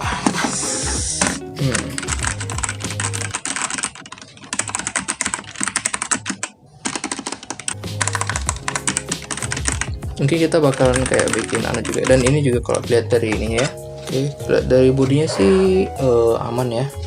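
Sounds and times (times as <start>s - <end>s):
mechanical keyboard typing: 1.6s - 10.0s, 10.7s - 12.8s.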